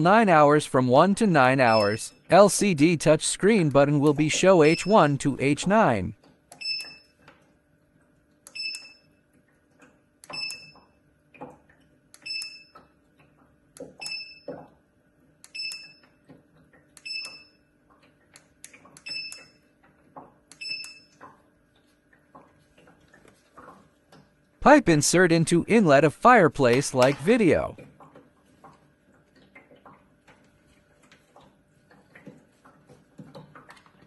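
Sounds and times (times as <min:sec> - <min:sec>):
faint clicks and knocks: 0:27.0 - 0:34.0.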